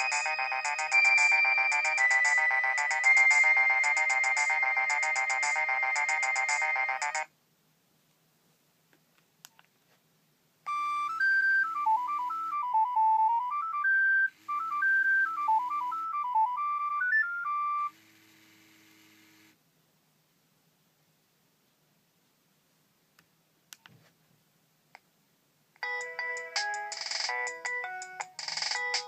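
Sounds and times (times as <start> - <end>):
polyphonic phone ringtone: 0.0 - 7.3, 10.7 - 17.9, 25.8 - 29.0.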